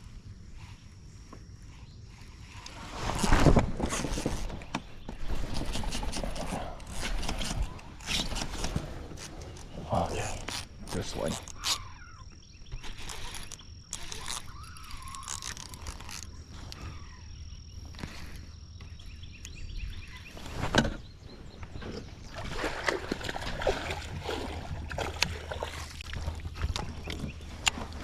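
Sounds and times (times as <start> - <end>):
water sloshing and splashing: 21.7 - 28.0.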